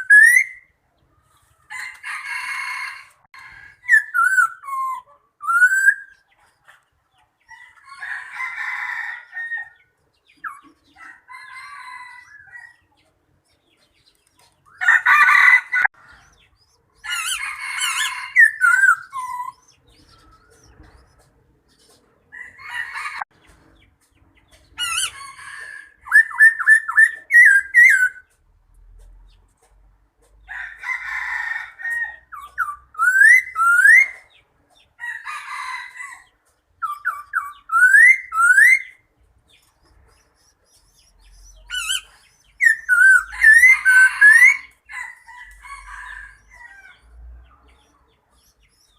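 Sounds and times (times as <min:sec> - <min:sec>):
hoarse crowing bird calls: 0:01.6 - 0:06.2, 0:14.6 - 0:23.2, 0:41.0 - 0:47.9
whistled rising bird notes: 0:03.9 - 0:06.2, 0:41.2 - 0:44.7.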